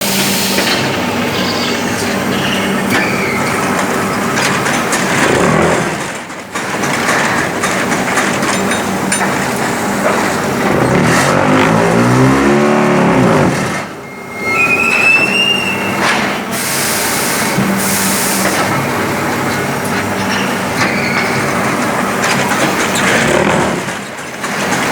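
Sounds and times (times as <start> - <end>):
high squeal: 1.3 - 3.6, 14.0 - 18.1, 20.3 - 21.6
machine clattering: 2.0 - 11.9, 18.5 - 24.9
bursts of hiss: 15.6 - 18.6.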